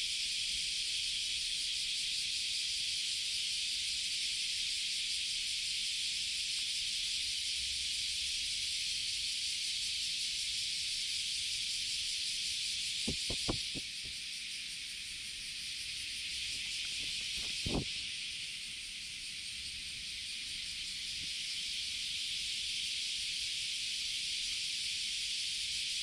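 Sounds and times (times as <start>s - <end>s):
high outdoor hiss: 0.0s - 26.0s
short low knocks: 13.1s - 13.8s.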